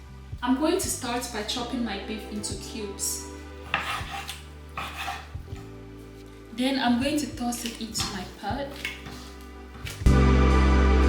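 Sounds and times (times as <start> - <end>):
instrumental music with heavy bass: 9.6 - 11.0.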